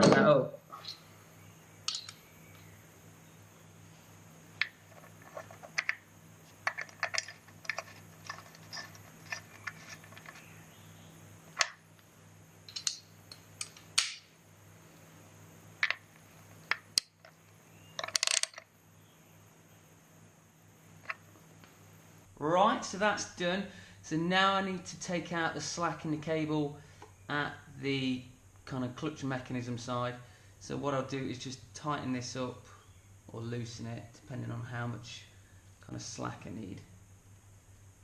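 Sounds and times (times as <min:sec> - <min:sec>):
spanner clicking on metal nut: 0:06.6 - 0:10.4.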